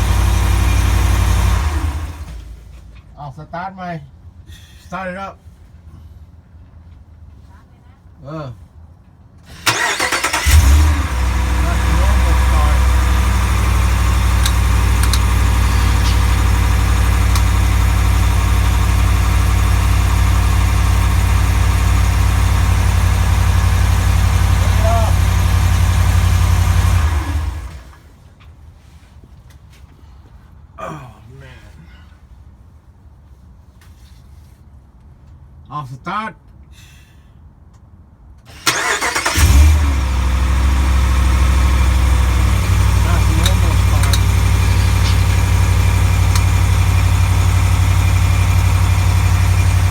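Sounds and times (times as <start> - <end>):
pickup engine idling: 0.0 - 2.6, 9.5 - 27.9, 38.6 - 49.9
starter motor cranking: 9.4 - 20.1, 38.5 - 49.9.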